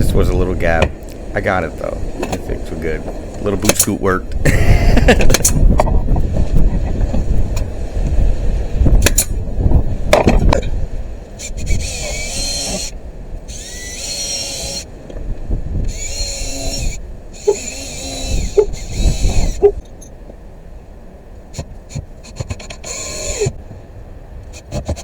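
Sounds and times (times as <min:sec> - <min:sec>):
power drill driving screws: 0:11.4 - 0:14.9, 0:15.9 - 0:19.7, 0:21.9 - 0:23.6.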